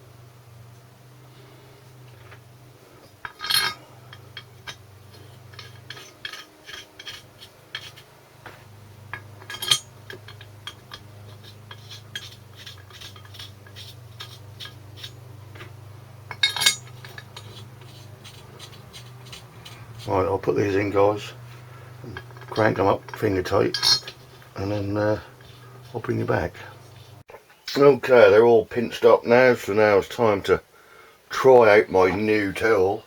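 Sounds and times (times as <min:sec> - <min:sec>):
metal clanks: 0:03.0 - 0:27.2
metal parts clinking: 0:03.2 - 0:08.0, 0:09.0 - 0:15.7, 0:16.3 - 0:27.2.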